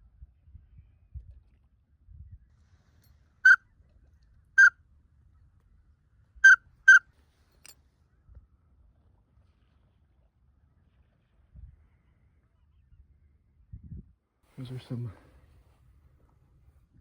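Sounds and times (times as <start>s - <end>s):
duck whistle call peeps: 6.4s - 7.0s.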